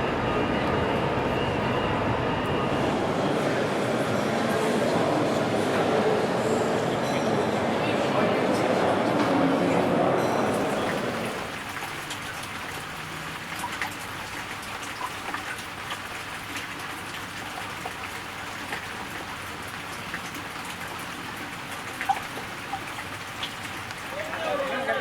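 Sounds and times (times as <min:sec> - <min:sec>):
steady rain: 0:02.6 - 0:25.0
raindrops ticking on a surface: 0:10.6 - 0:25.0.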